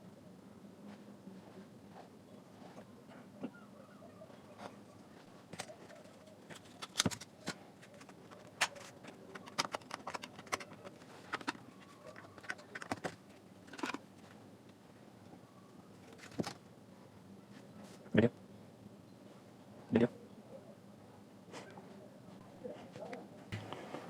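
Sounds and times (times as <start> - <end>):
plastic and metal parts handled: 4.6 - 14.4, 16.0 - 16.6.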